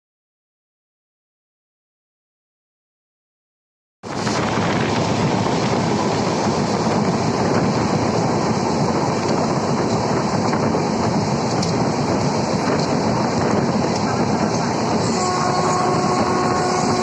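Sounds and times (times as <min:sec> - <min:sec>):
train passing at speed: 0:04.0 - 0:17.0.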